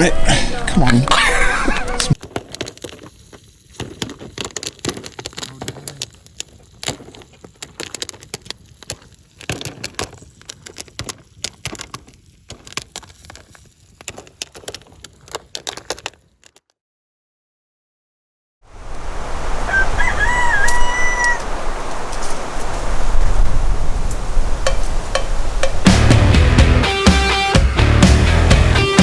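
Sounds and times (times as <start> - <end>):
crackling and snapping: 1.8 - 16.8.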